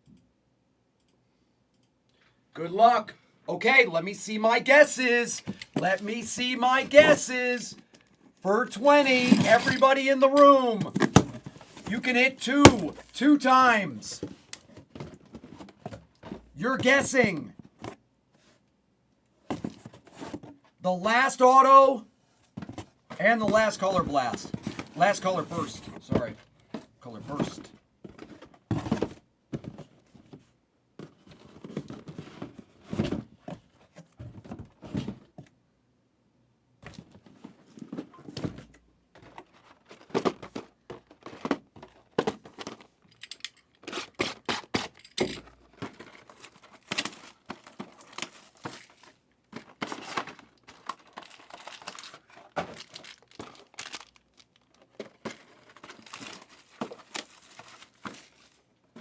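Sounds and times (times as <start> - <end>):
cards handled and set down: 9.0 - 13.2
card pack wrappers tearing: 49.8 - 58.0.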